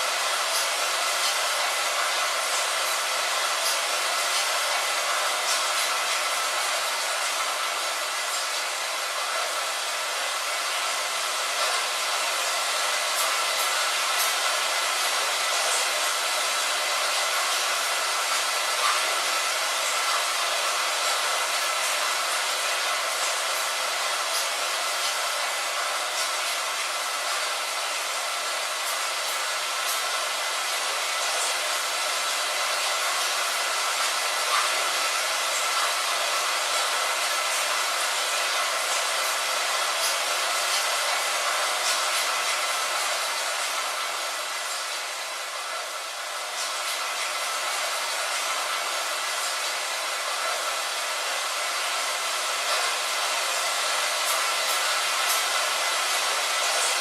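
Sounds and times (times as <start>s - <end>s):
rain on a window: 0.0s - 57.0s.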